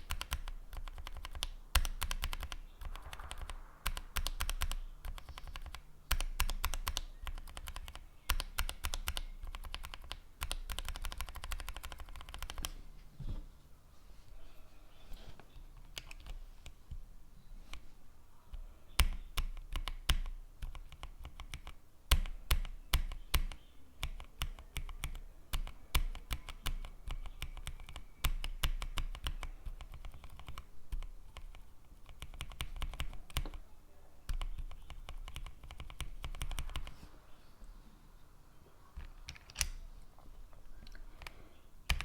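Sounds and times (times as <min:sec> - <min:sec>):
typing on mechanical keyboard: 0:00.0 - 0:12.8, 0:15.8 - 0:16.4, 0:18.5 - 0:33.6, 0:34.3 - 0:37.0, 0:41.2 - 0:42.0.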